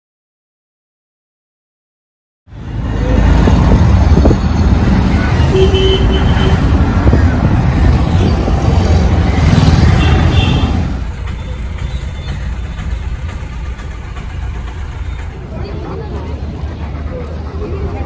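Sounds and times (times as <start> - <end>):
vehicle rumble: 2.5 - 18.0
horn toot: 5.3 - 6.8, 9.4 - 11.0.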